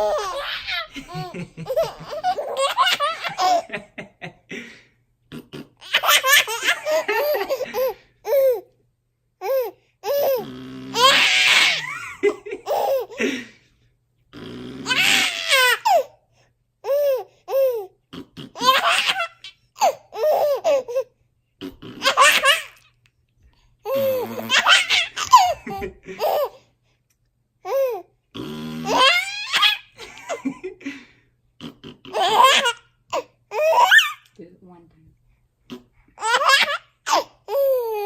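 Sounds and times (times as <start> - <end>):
baby laughing: 0.0 - 4.5, 5.3 - 8.7, 9.4 - 13.4, 14.8 - 16.1, 16.8 - 23.0, 23.8 - 26.7, 28.8 - 30.9, 31.6 - 34.4, 35.7 - 38.0
buzzing fart noise: 14.3 - 15.0, 21.6 - 22.4, 28.4 - 29.1.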